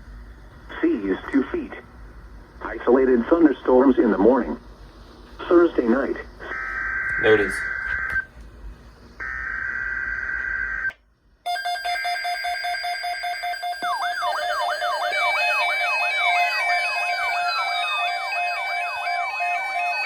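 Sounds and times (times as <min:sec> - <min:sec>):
beeping electronic alarm: 0:06.5 - 0:08.2, 0:11.5 - 0:20.0
warbling siren-like warning: 0:06.5 - 0:08.2, 0:09.2 - 0:10.9, 0:11.5 - 0:20.0.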